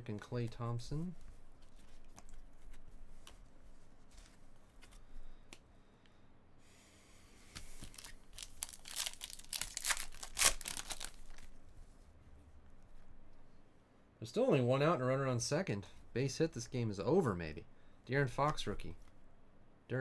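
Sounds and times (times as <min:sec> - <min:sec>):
wrapper tearing and crinkling: 0:07.8 - 0:11.6.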